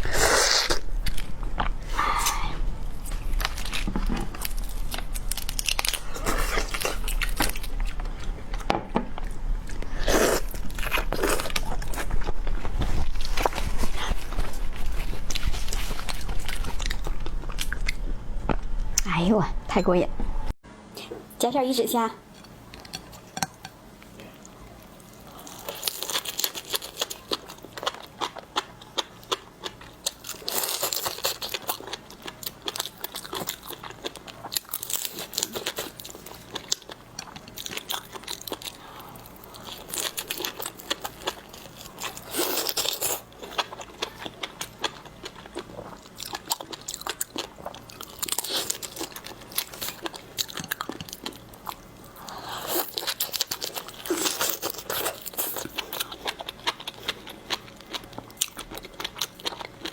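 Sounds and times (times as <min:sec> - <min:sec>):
crunching and wet chewing: 0:24.0 - 0:59.9.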